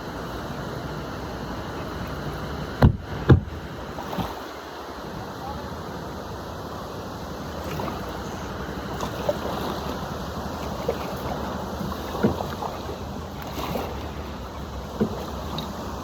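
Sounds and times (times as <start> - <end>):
water splashing around paddle: 0.6 - 5.4, 7.0 - 16.0
paddle knocks: 2.7 - 4.4, 9.0 - 16.0.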